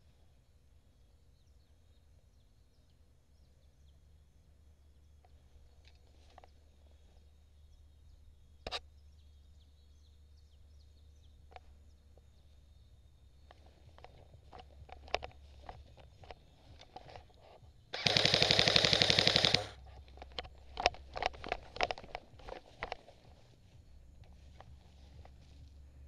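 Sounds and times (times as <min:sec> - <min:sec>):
low steady rumble: 0:00.0 - 0:26.0
sharp click: 0:18.0 - 0:22.5.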